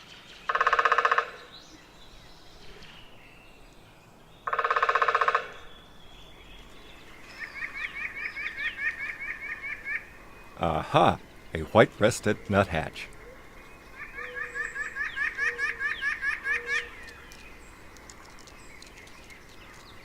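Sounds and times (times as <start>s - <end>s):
woodpecker drumming: 0.5s - 1.4s, 4.5s - 5.6s, 7.7s - 20.0s.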